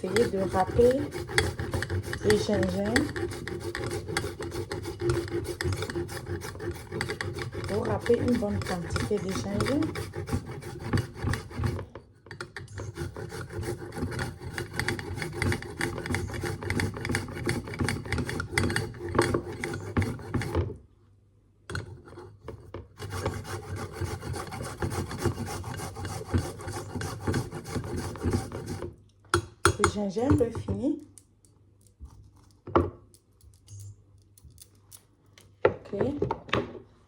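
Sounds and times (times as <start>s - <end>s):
ginger rasping on a hand grater: 0.0s - 20.6s, 23.0s - 28.9s.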